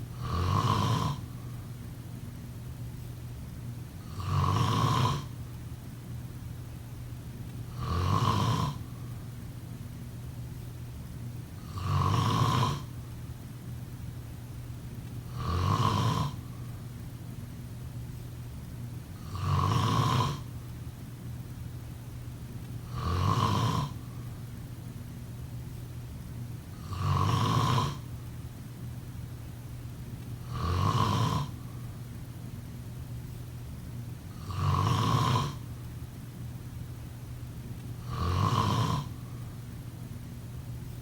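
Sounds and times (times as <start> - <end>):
low steady hum: 0.0 - 41.0
person snoring: 0.2 - 1.4, 4.0 - 5.4, 7.7 - 8.9, 11.6 - 12.9, 15.3 - 16.4, 19.2 - 20.5, 22.9 - 24.0, 26.8 - 28.1, 30.4 - 31.6, 34.4 - 35.6, 38.0 - 39.3.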